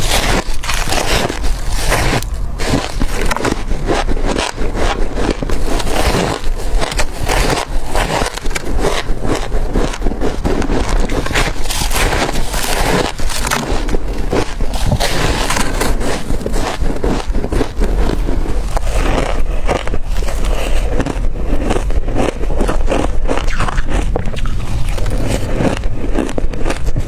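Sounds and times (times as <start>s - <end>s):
ice crunching between teeth: 0.0s - 27.0s.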